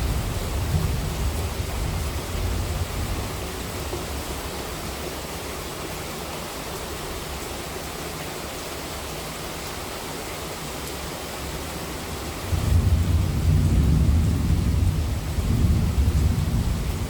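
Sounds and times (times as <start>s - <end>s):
heavy rain falling: 0.0s - 17.0s
thunder rumble: 12.5s - 17.0s.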